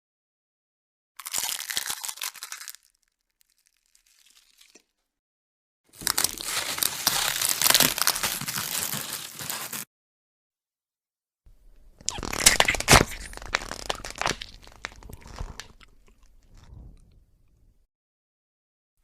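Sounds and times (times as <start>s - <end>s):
bones cracking and crunching: 1.2s - 4.9s, 5.9s - 9.8s, 11.8s - 16.7s.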